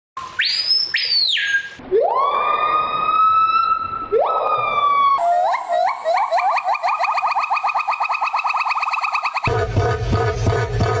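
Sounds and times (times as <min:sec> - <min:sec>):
high rising whistled animal wails: 0:00.3 - 0:09.5
short animal chirps: 0:05.2 - 0:09.5.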